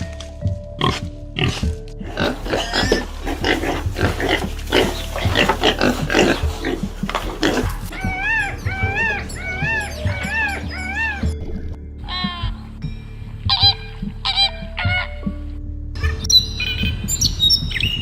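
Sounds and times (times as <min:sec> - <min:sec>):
pigs grunting and squealing: 0:00.8 - 0:12.8
large bird honking: 0:02.1 - 0:11.4, 0:13.5 - 0:15.2.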